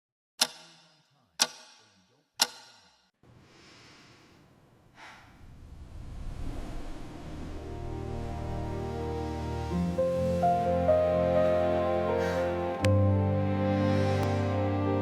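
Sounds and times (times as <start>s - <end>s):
clock-like ticks: 0.4s - 3.0s
whoosh: 5.2s - 10.8s
low rumble: 5.3s - 11.3s.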